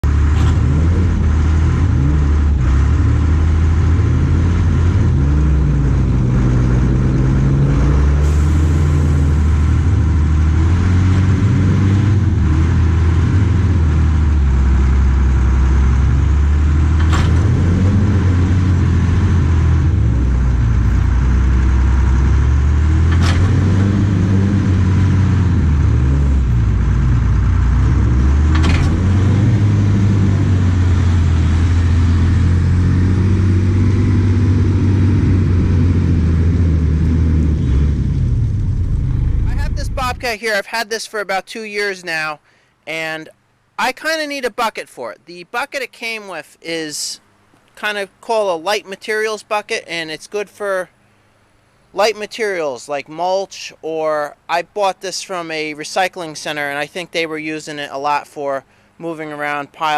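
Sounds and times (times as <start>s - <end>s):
loader engine running: 0.0s - 40.4s.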